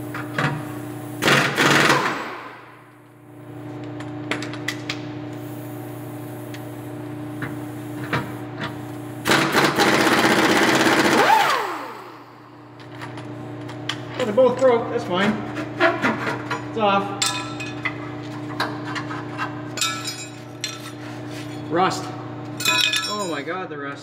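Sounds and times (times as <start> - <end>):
steady hum: 0.0 - 24.0
power tool whining: 9.3 - 12.3.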